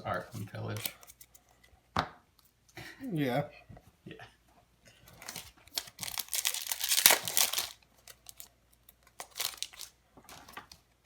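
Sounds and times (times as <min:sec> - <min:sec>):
foil wrapper tearing and crumpling: 0:05.2 - 0:10.0.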